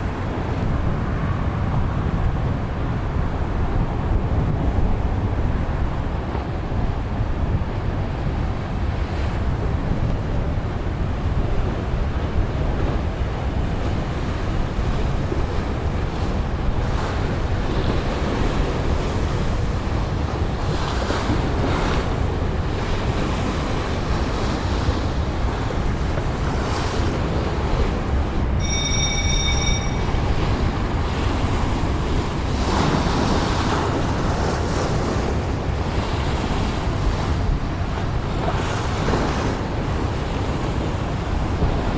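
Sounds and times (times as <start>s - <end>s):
wind buffeting microphone: 0.0s - 41.9s
high steady tone: 28.4s - 31.4s.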